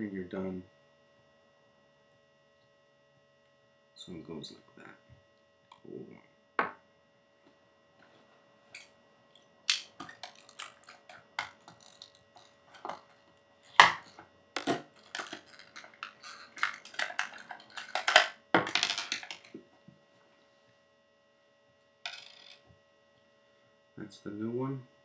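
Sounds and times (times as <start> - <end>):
metal parts and tools clicking: 9.7 - 13.1.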